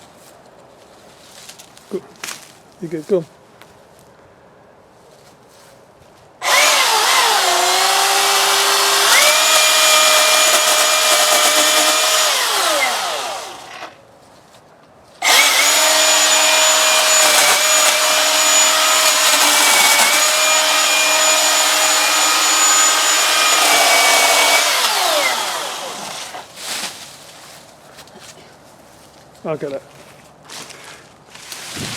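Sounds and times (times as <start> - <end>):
chainsaw cutting wood: 6.4 - 14.0, 15.2 - 26.5.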